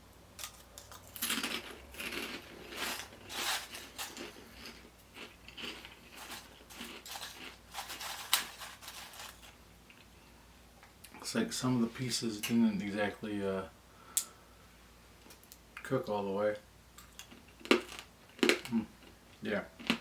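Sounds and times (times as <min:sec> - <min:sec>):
person chewing crunchy pork rinds: 0:00.4 - 0:10.2, 0:17.0 - 0:19.2, 0:19.8 - 0:20.0.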